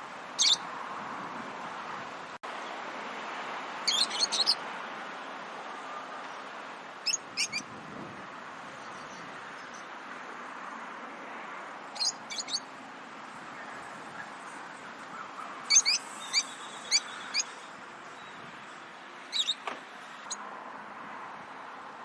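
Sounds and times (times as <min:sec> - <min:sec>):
birds chirping shrilly: 0:00.4 - 0:00.6, 0:03.8 - 0:04.6, 0:07.0 - 0:07.7, 0:11.9 - 0:12.7, 0:13.6 - 0:20.4.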